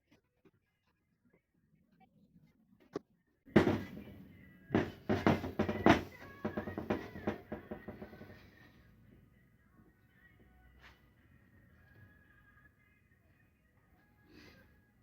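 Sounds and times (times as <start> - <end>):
background music with heavy drums: 3.5 - 8.4.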